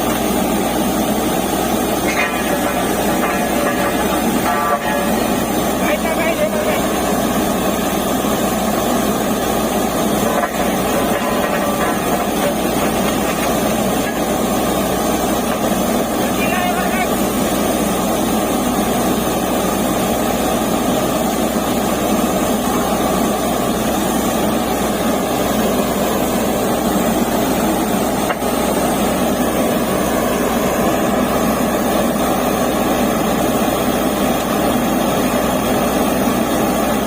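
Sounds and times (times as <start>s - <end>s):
drilling rig running: 0.0s - 37.0s.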